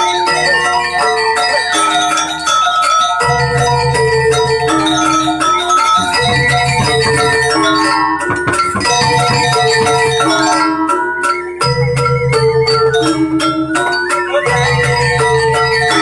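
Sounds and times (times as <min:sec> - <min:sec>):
metallophones ringing melody: 0:03.0 - 0:16.0
sharp metallic strikes: 0:06.0 - 0:10.5.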